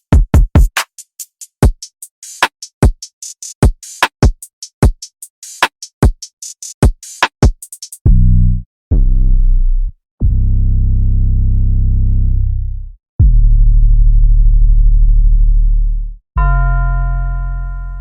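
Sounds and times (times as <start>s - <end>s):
punchy kick drums: 0.0s - 0.8s, 2.8s - 5.1s, 6.0s - 9.4s, 13.2s - 13.6s
deep bass notes: 8.1s - 16.7s.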